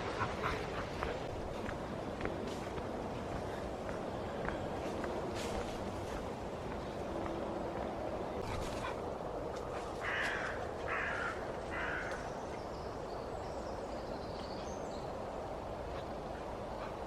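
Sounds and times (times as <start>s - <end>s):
outdoor background hiss: 0.0s - 17.0s
crow cawing: 10.0s - 12.2s.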